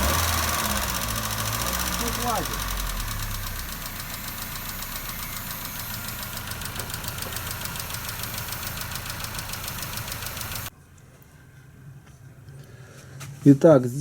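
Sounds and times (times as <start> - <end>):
car engine running: 0.0 - 10.7
valvetrain ticking: 0.0 - 10.7.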